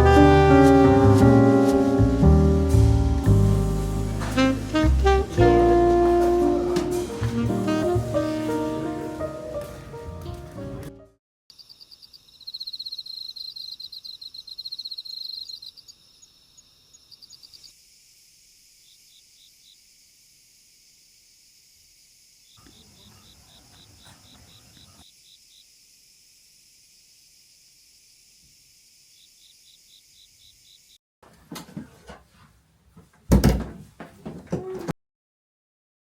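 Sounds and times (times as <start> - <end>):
steady high hiss: 0.6 - 9.3
insects chirping: 11.5 - 31.0.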